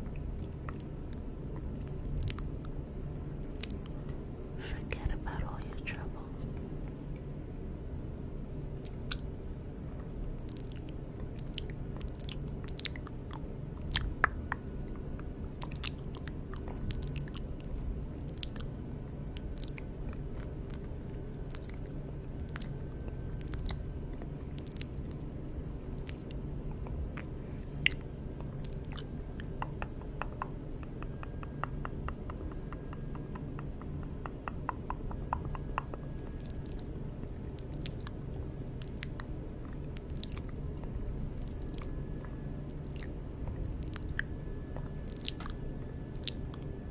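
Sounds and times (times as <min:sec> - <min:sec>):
wet mouth clicks and pops: 0:00.1 - 0:02.8, 0:03.4 - 0:04.0, 0:08.7 - 0:09.3, 0:10.4 - 0:18.8, 0:19.4 - 0:20.9, 0:21.5 - 0:21.9, 0:22.5 - 0:22.8, 0:23.4 - 0:23.8, 0:24.6 - 0:25.2, 0:25.9 - 0:36.9, 0:37.6 - 0:38.2, 0:38.8 - 0:40.6, 0:41.4 - 0:43.1, 0:43.7 - 0:46.7.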